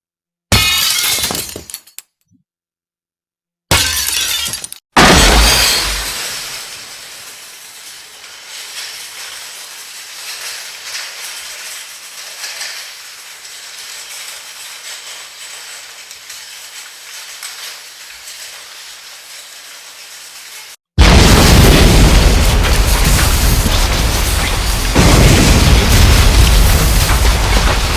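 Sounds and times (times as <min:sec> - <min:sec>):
loud blast: 0:05.0 - 0:07.3, 0:21.0 - 0:27.9
steady crackling hiss: 0:06.0 - 0:20.8
blast with heavy low rumble: 0:21.0 - 0:27.9.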